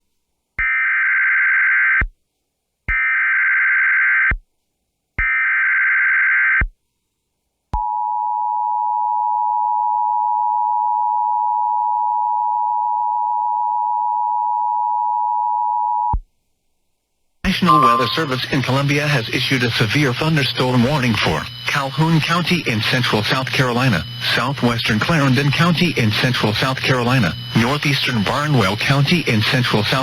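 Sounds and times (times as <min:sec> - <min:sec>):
two-tone attention signal: 0:17.5 - 0:19.6
data tone bursts: 0:17.5 - 0:30.0.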